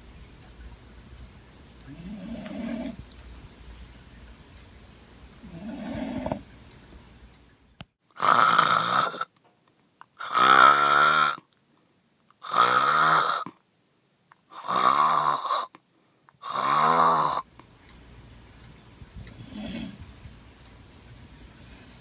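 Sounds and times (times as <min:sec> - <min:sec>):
loud snoring: 0:01.9 - 0:03.0, 0:05.4 - 0:06.4, 0:08.2 - 0:09.3, 0:10.2 - 0:11.4, 0:12.4 - 0:13.5, 0:14.6 - 0:15.8, 0:16.4 - 0:17.5, 0:19.3 - 0:20.1.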